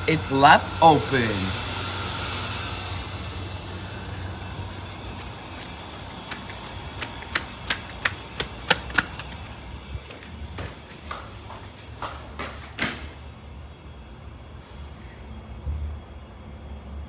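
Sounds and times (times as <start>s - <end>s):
sharp irregular clicks and taps: 6.2s - 9.5s.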